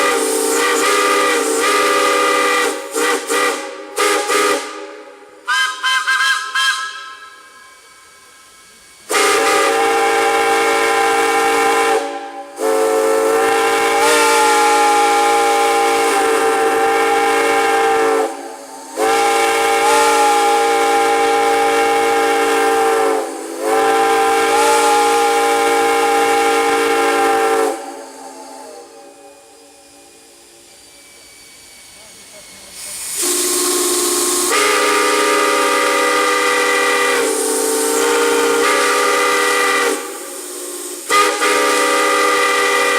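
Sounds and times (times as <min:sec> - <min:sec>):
steam hissing: 0:00.0 - 0:42.9
steam whistle blasts: 0:00.0 - 0:42.9.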